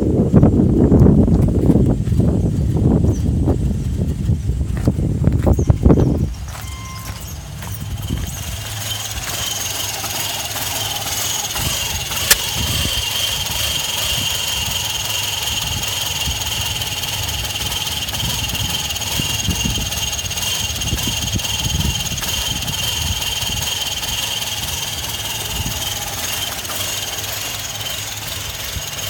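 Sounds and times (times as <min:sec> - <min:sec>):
car engine idling roughly: 0:00.2 - 0:29.0
high-pitched whine: 0:05.4 - 0:29.0
sharp click: 0:12.1 - 0:13.0.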